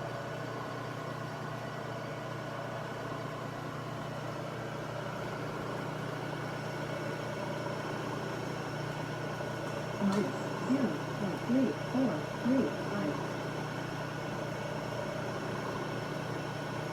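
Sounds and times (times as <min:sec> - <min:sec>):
milling machine humming: 0:03.1 - 0:16.9.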